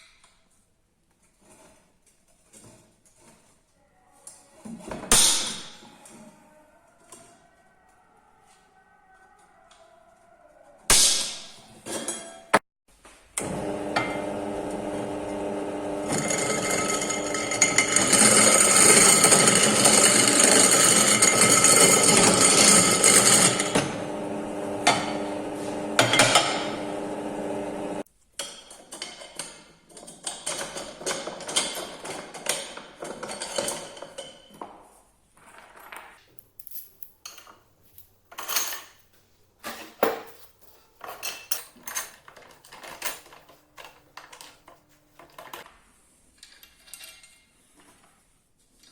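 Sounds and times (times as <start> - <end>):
rough metal grinding: 14.1 - 27.9
metal parts clinking: 35.6 - 45.6, 46.4 - 47.6.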